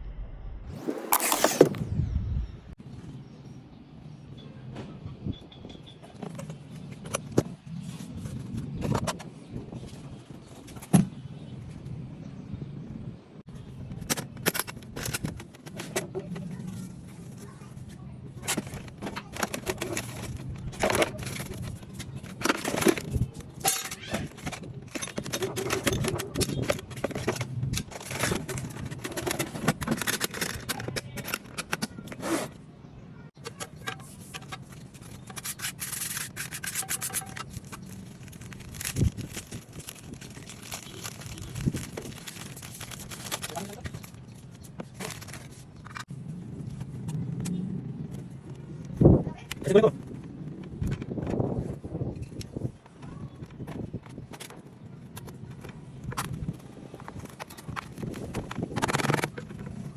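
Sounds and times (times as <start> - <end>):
scraping and rubbing: 0.7 - 1.9, 14.2 - 32.6, 33.4 - 46.1, 55.2 - 59.9.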